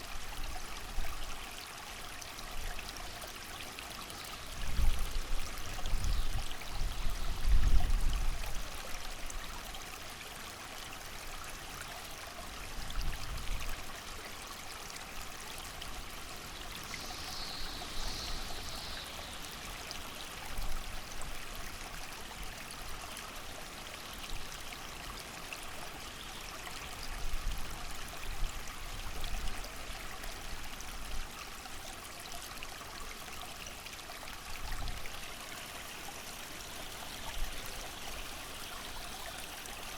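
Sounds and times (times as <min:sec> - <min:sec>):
rain: 0:00.0 - 0:32.1
creek flowing: 0:00.0 - 0:39.9.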